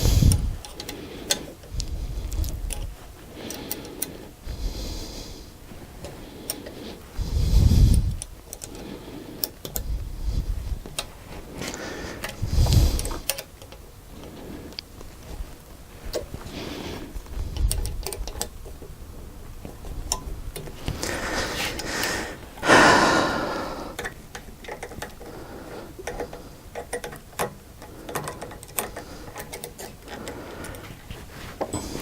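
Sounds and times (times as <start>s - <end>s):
clicks and knocks on metal parts: 0.6s - 1.6s, 13.0s - 13.8s, 17.6s - 19.0s, 23.9s - 25.3s, 26.0s - 30.8s.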